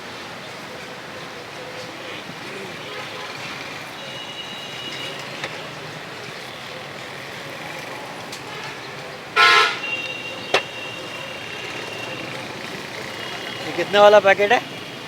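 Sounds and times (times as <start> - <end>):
street traffic: 0.0 - 15.0
vehicle horn toot: 2.7 - 5.8, 8.5 - 12.6.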